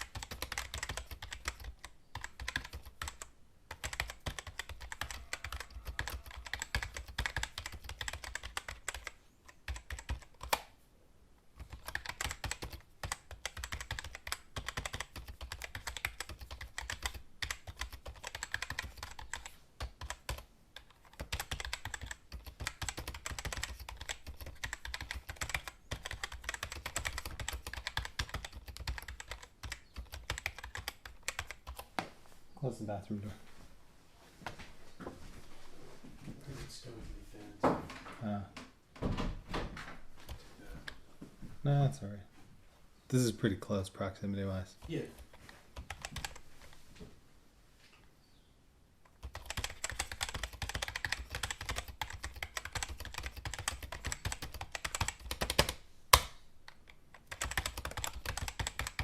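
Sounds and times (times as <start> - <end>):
typing on keyboard: 0.0 - 10.7, 11.6 - 31.9, 44.8 - 46.4, 49.1 - 59.0.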